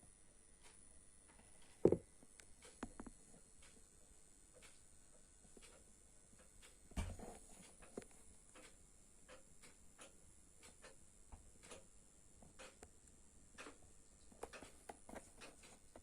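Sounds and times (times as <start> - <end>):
soft clicks and crackles: 4.5 - 11.0, 11.6 - 16.0.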